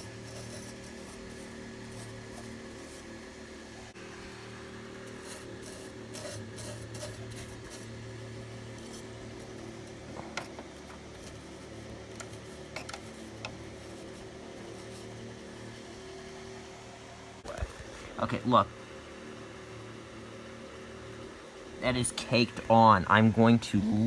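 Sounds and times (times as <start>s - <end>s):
rubbing and scraping heatsink: 0.0s - 16.0s
steady low hum: 0.0s - 24.0s.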